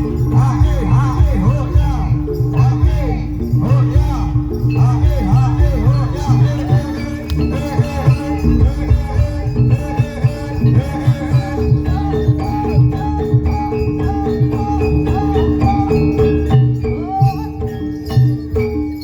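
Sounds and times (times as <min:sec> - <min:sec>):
gamelan music: 0:00.0 - 0:19.0.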